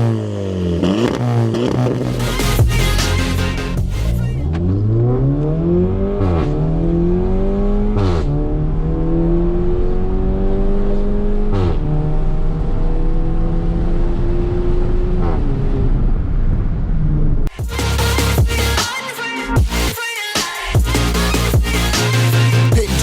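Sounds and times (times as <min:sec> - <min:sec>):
exhaust crackle on upshift: 0:00.0 - 0:06.8
car engine accelerating: 0:00.0 - 0:18.8.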